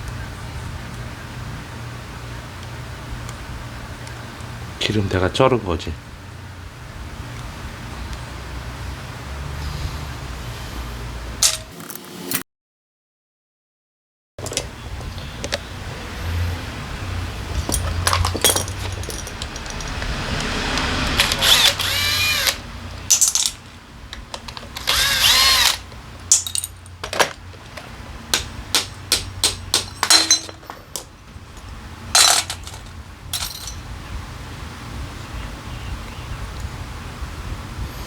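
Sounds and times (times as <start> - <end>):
small metal parts clicking: 17.5 - 33.8.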